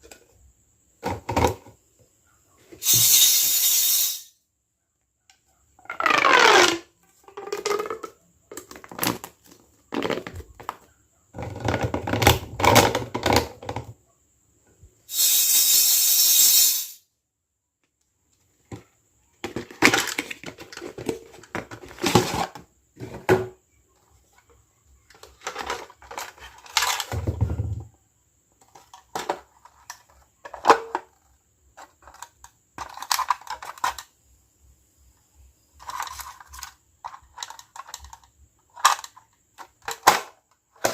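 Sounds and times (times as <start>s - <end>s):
steady hiss: 2.8s - 4.4s, 15.1s - 17.1s
plastic toy pieces clattering: 19.5s - 22.6s, 25.1s - 27.2s, 31.8s - 34.1s, 35.8s - 40.9s.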